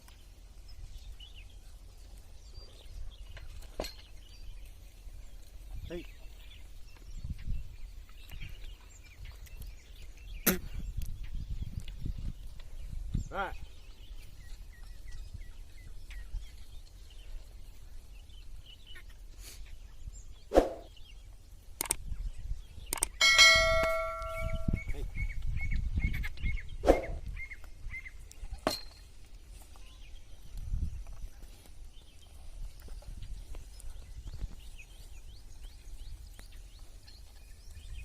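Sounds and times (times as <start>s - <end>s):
metal bell clanging: 23.2s - 24.9s.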